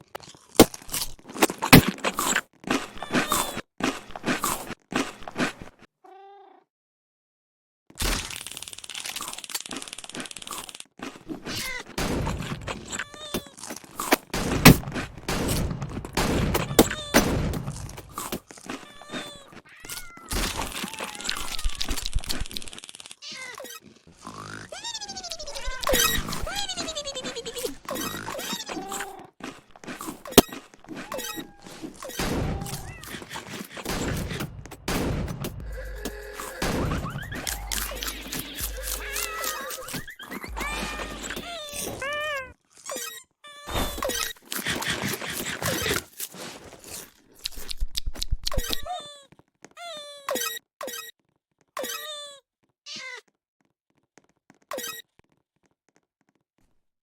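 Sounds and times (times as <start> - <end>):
cat meowing: 6.0 - 6.7, 13.0 - 13.5, 16.6 - 17.3, 18.8 - 22.2, 23.2 - 23.8, 24.7 - 29.4, 31.0 - 31.8, 32.4 - 33.2, 37.1 - 39.9, 40.5 - 44.0, 48.8 - 50.3, 51.8 - 53.2
knocks and thuds: 32.2 - 35.7.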